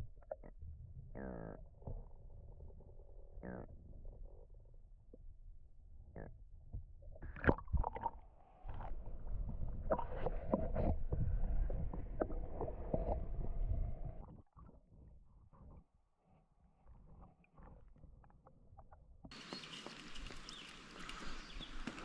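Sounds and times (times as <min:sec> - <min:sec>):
low rumble: 0:08.6 - 0:14.5.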